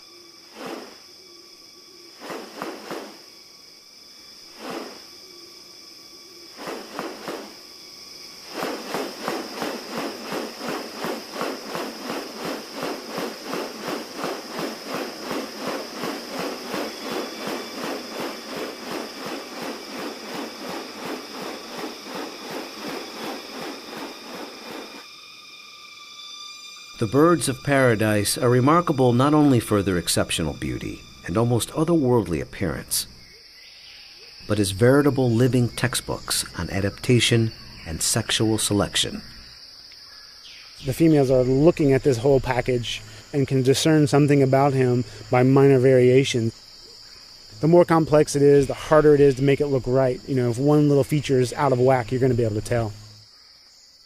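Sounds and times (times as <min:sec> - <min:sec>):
insects droning: 0:00.0 - 0:54.0
fast rustling pulses: 0:00.5 - 0:01.0, 0:02.2 - 0:03.2, 0:04.6 - 0:05.1, 0:06.5 - 0:07.7, 0:08.4 - 0:25.1
rustling: 0:06.6 - 0:07.6, 0:08.4 - 0:25.0.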